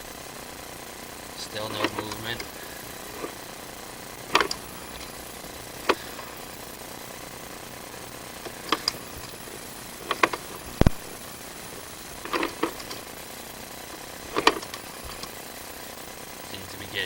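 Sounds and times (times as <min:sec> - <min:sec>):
steady hiss: 0:00.0 - 0:17.0
cable clicks and knocks in pipe: 0:14.3 - 0:15.3.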